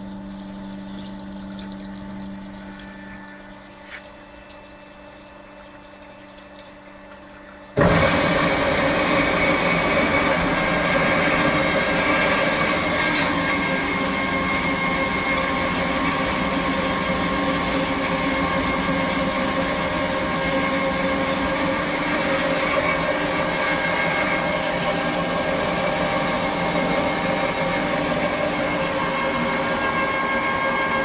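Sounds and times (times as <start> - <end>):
quiet machine hum: 0.0 - 31.0
band saw running: 7.8 - 31.0.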